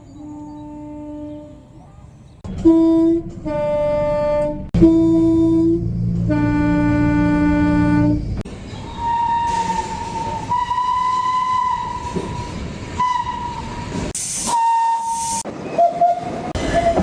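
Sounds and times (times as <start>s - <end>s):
two-tone train horn: 0.1s - 1.7s, 2.5s - 8.3s, 9.0s - 13.8s.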